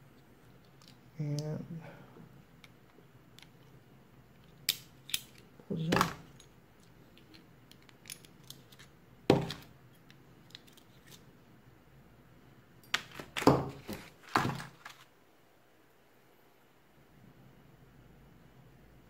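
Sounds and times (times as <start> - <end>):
small metal parts clinking: 4.4 - 8.9.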